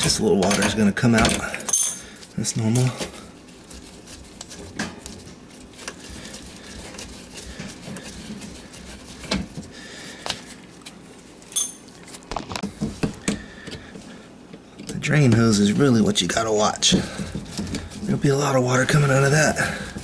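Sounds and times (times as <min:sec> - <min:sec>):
hand tools clicking and clinking: 0:00.1 - 0:02.2, 0:11.5 - 0:11.9.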